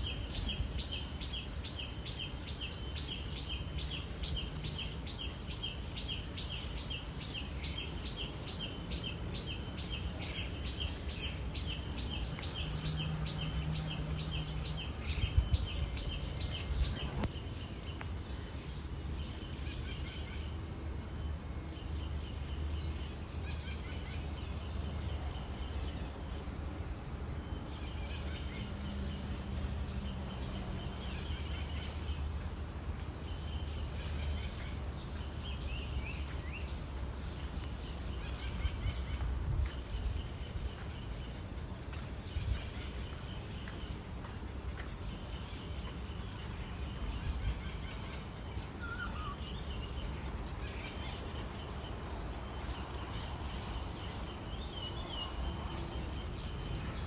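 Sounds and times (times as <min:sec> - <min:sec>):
cicadas droning: 0:00.0 - 0:57.0
short repeated bird calls: 0:48.8 - 0:49.6.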